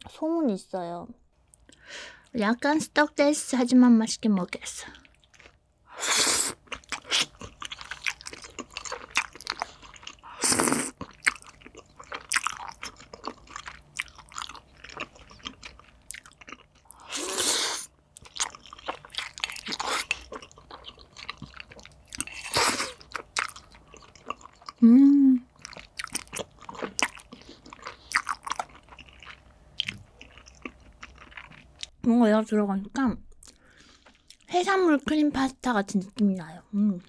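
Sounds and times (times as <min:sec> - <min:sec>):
wet chewing: 0:06.4 - 0:24.8, 0:25.5 - 0:31.9.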